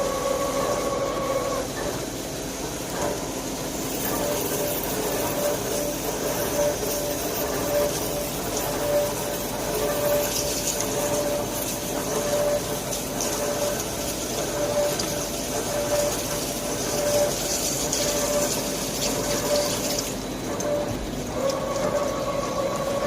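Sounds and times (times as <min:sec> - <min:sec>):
coolant flowing: 0:00.0 - 0:23.0
lathe cutting metal: 0:04.0 - 0:23.0.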